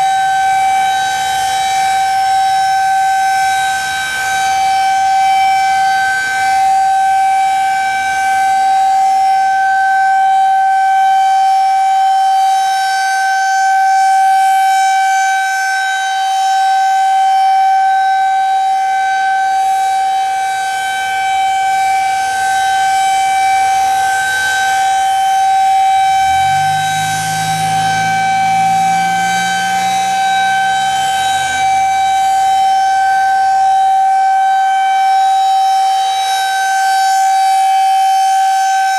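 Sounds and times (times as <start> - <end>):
tornado warning siren: 0.0 - 38.9
low droning sound: 21.9 - 34.0.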